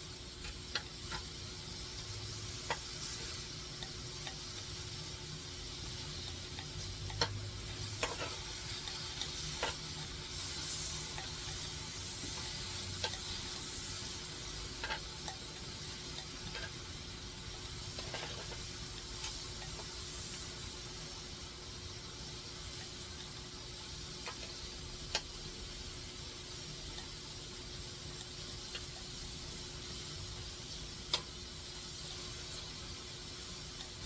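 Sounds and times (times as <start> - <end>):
steady hiss: 0.0 - 34.0
sharp clicks and ticks: 0.4 - 20.1, 24.2 - 25.4, 31.0 - 31.4.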